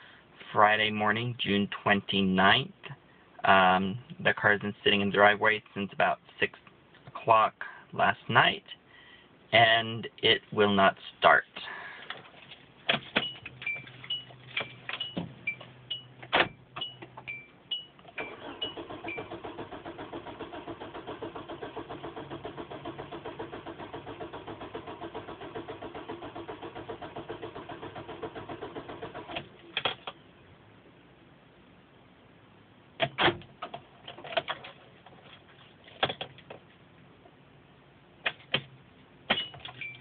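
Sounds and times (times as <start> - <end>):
car engine cranking: 18.0 - 30.2.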